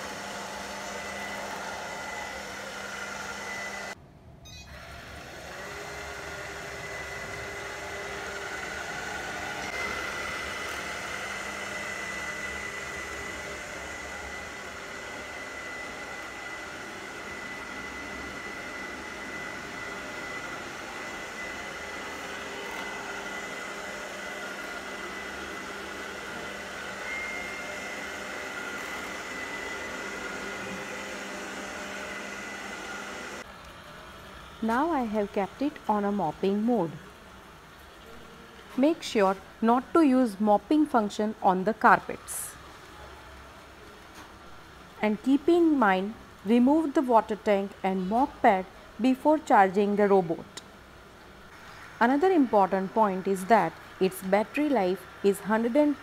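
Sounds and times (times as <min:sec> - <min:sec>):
robot vacuum cleaner whirring: 0:00.0 - 0:04.0, 0:04.7 - 0:36.6.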